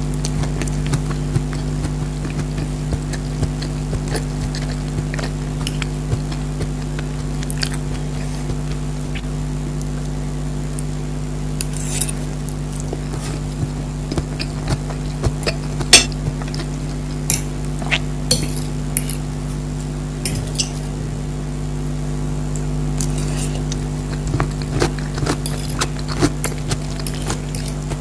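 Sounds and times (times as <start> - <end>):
chewing and mouth sounds: 0.0 - 10.9, 11.6 - 19.3, 23.0 - 28.0
steady low hum: 0.0 - 28.0
cutlery clinking on a plate: 18.3 - 19.2, 20.3 - 20.9, 25.4 - 25.9, 26.5 - 27.8.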